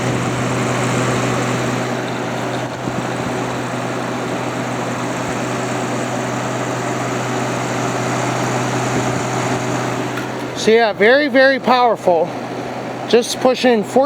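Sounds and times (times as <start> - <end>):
air conditioner running: 0.0 - 14.0.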